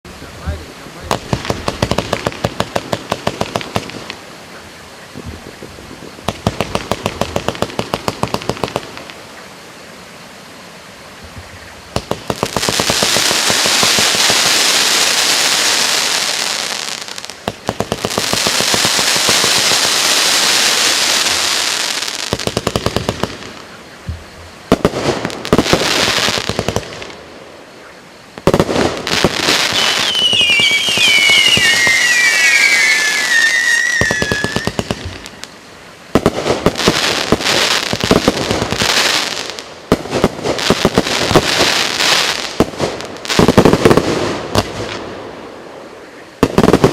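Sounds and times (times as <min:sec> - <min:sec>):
firework crackling: 0:00.2 - 0:09.4, 0:11.2 - 0:27.6, 0:28.4 - 0:46.9
firework launch pops: 0:11.9 - 0:13.9
falling firework whistles: 0:28.4 - 0:35.6.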